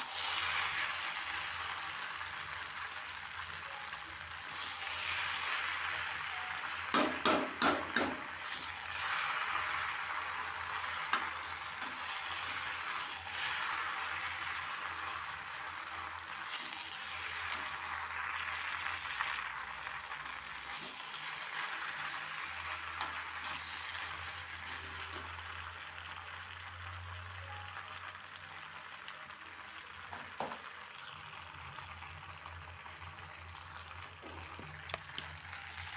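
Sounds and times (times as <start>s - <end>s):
food sizzling in a frying pan: 0.0s - 35.9s
spoon knocking against pan: 6.9s - 8.3s.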